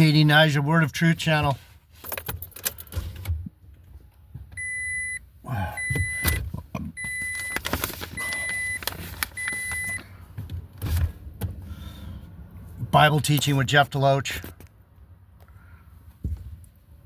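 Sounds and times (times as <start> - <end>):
handling clicks and rustling: 6.1 - 11.1.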